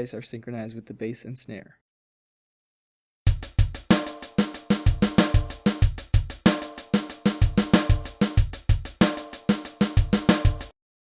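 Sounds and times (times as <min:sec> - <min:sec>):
funky drum-kit beat: 0:03.3 - 0:10.7.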